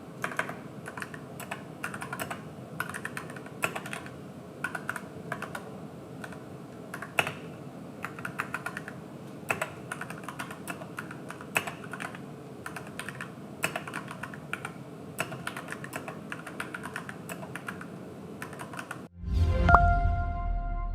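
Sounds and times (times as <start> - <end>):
mechanical keyboard typing: 0.2 - 19.1.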